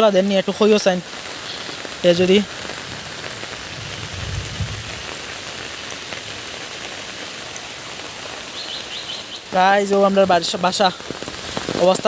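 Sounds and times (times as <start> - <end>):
rain pattering: 0.0 - 12.0
low rumble: 2.9 - 5.4.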